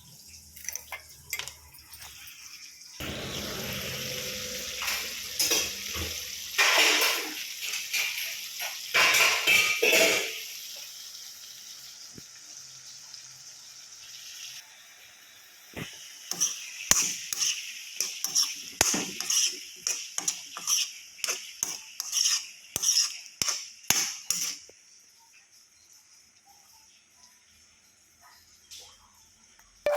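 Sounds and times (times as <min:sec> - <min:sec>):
food sizzling in hot oil: 0:01.2 - 0:28.6
spatula knocking and scraping pan: 0:16.3 - 0:24.6.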